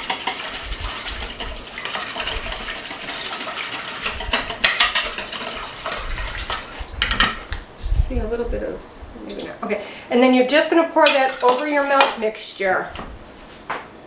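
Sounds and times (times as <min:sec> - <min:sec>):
whisk sloshing in a bowl: 0:00.0 - 0:07.5.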